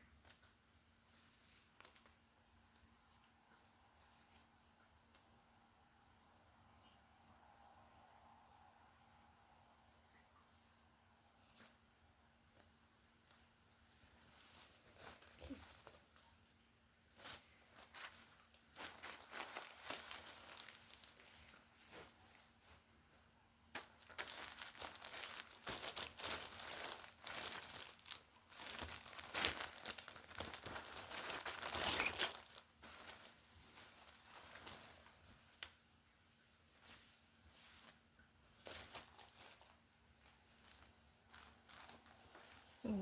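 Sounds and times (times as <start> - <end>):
plastic packaging crinkling: 1.4 - 2.2, 17.2 - 22.2, 23.7 - 35.7, 38.6 - 42.7.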